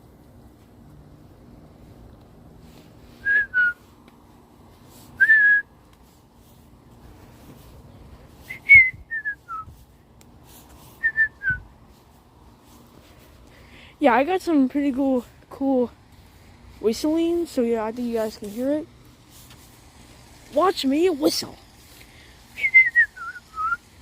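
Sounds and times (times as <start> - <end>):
person whistling: 3.2 - 3.8, 5.2 - 5.7, 8.5 - 9.7, 11.0 - 11.6, 22.6 - 23.8.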